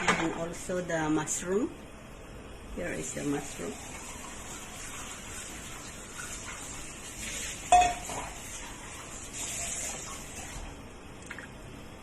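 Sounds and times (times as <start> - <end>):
boiling water hissing: 0.5 - 11.6
utensil clinking against pot: 7.7 - 8.4.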